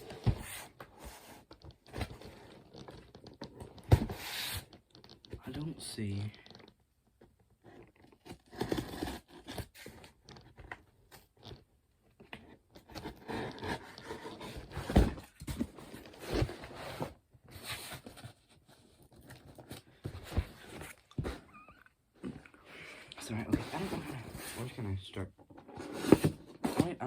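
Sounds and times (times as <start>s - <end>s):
cardboard scraping and tearing: 8.1s - 10.0s, 12.8s - 21.5s, 23.3s - 24.9s, 25.7s - 27.0s.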